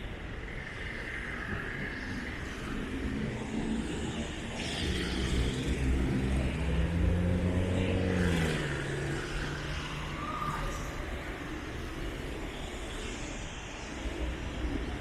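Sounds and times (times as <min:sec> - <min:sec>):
vehicle engine passing by: 0:04.6 - 0:10.6.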